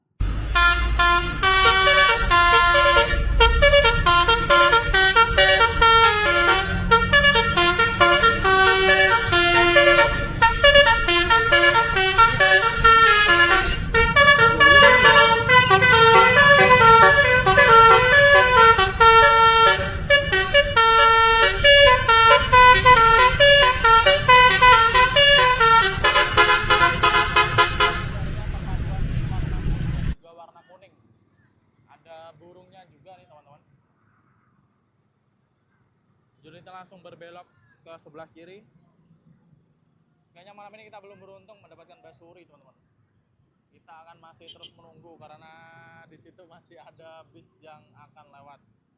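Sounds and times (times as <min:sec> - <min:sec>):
low engine rumble: 0:00.0 - 0:30.2
musical bus horn melody: 0:00.2 - 0:28.3.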